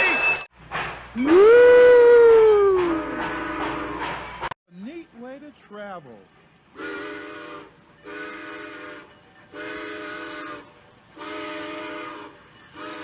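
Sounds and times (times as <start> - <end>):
train whistle blasts: 3.0 - 4.0, 6.8 - 13.0.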